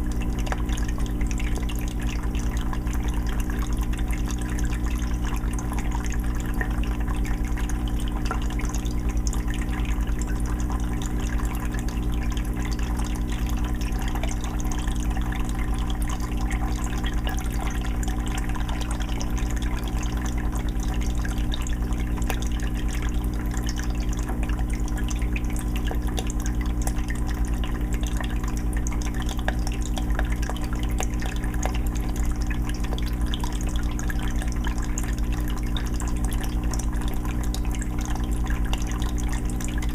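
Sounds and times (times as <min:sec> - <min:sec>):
filter low hum: 0:00.0 - 0:39.9
water trickling and dripping: 0:00.0 - 0:39.9.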